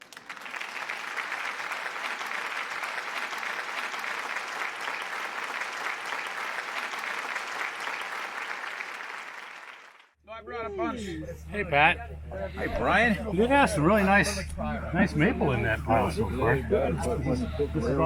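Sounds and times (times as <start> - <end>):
applause: 0.0 - 10.2.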